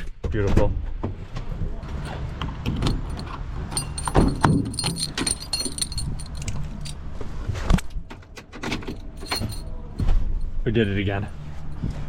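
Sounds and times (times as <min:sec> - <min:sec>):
keys jangling: 0:02.7 - 0:07.0, 0:08.1 - 0:10.1
scattered clicks and knocks: 0:02.7 - 0:07.0.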